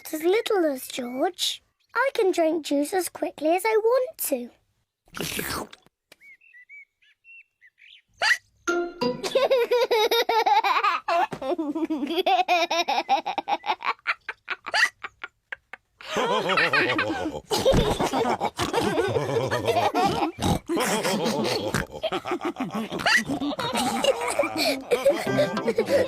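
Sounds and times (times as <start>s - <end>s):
cartoon characters laughing: 9.2s - 26.0s.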